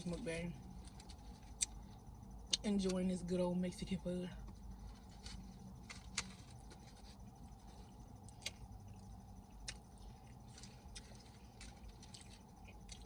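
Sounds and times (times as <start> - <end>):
low steady background: 0.0 - 13.0
mouth clicks and smacks chewing: 8.2 - 13.0.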